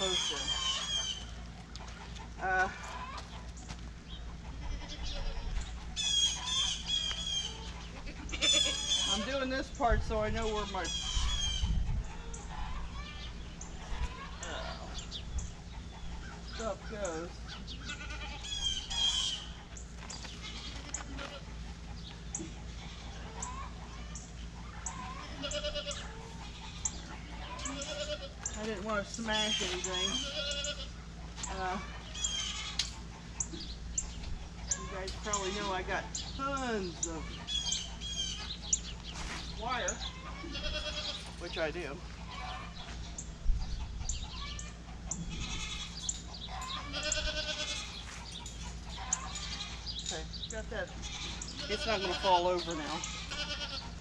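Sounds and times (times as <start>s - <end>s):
low rumble of wind: 0.0s - 54.0s
goats bleating: 4.4s - 9.4s, 17.8s - 19.6s, 20.2s - 21.6s, 24.9s - 33.0s, 40.0s - 42.8s, 44.5s - 48.2s, 48.9s - 50.1s, 50.9s - 54.0s.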